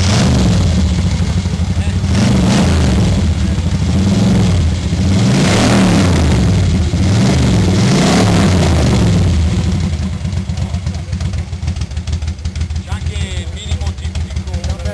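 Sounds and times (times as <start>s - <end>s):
motorcycle engine revving: 0.0s - 14.9s.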